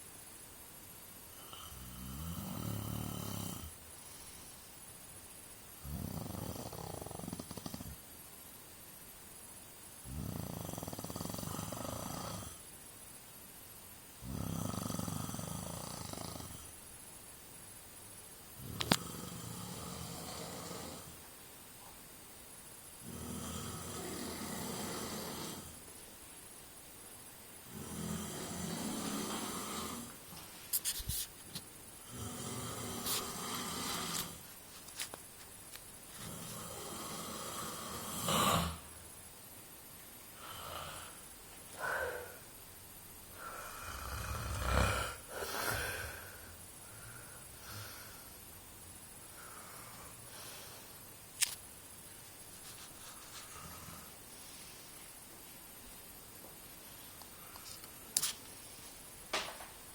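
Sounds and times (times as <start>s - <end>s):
man snoring heavily: 1.4s - 3.8s, 5.8s - 8.0s, 10.0s - 12.6s, 14.2s - 16.8s, 18.6s - 21.2s, 23.0s - 25.8s, 27.6s - 30.3s, 32.0s - 34.4s, 36.2s - 39.0s, 40.4s - 41.2s, 41.8s - 42.4s, 43.3s - 48.4s, 53.5s - 54.2s.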